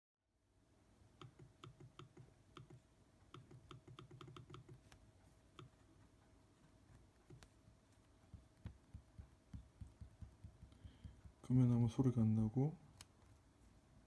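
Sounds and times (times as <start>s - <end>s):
trackpad clicks: 1.2s - 5.0s.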